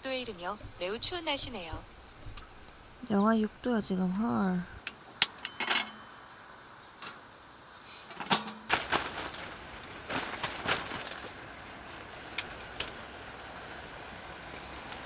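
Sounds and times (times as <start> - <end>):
steady outdoor hiss: 0.0 - 15.0.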